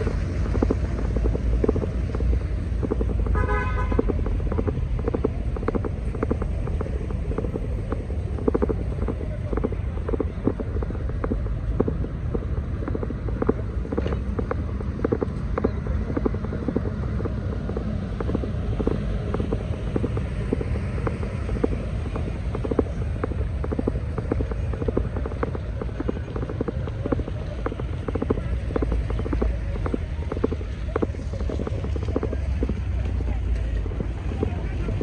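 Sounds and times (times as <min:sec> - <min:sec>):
heavy rain with ticking drops: 0:00.0 - 0:35.0
steady low rumble: 0:00.0 - 0:35.0.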